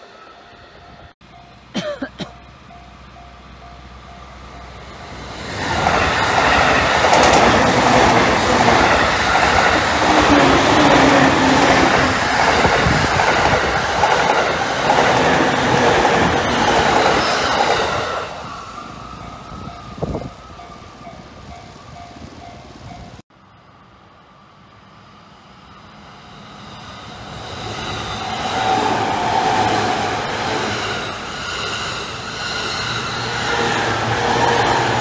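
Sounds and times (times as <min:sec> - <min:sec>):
crossing warning bell ringing: 0:00.0 - 0:23.2
electric train passing: 0:00.0 - 0:35.0
wheels clattering over rail joints: 0:05.3 - 0:18.1.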